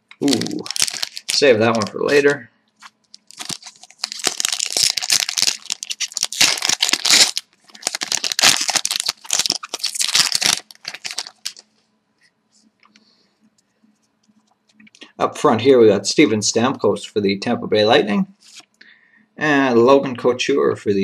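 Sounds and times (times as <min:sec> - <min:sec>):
wrapper tearing and crinkling: 0:00.2 - 0:11.7.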